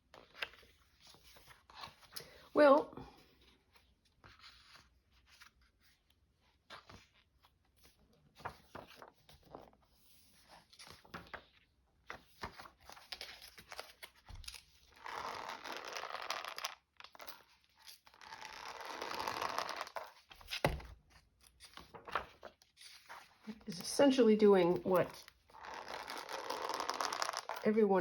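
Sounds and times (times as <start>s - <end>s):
paper rustling: 3.7s - 24.0s, 24.6s - 28.0s
paper tearing: 14.4s - 17.3s, 18.1s - 20.7s, 25.1s - 27.7s.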